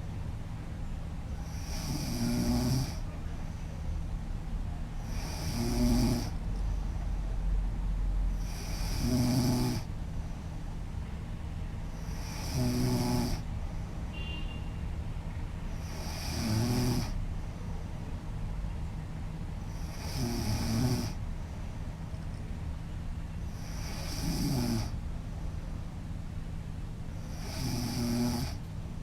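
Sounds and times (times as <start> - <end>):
woman snoring loudly: 1.5 - 3.0, 5.0 - 6.4, 8.4 - 9.9, 12.0 - 13.4, 15.8 - 17.2, 19.7 - 21.2, 23.6 - 25.0, 27.2 - 28.6.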